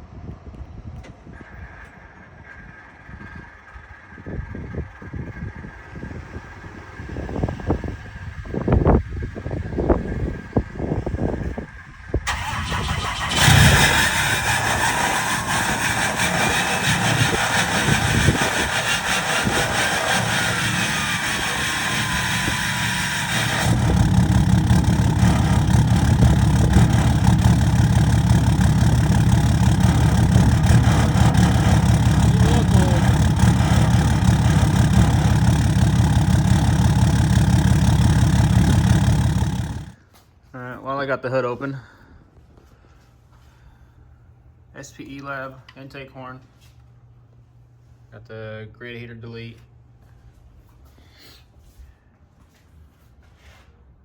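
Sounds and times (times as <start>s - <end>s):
diesel engine cranking and starting: 1.1s - 40.0s
steady high whine: 12.4s - 40.0s.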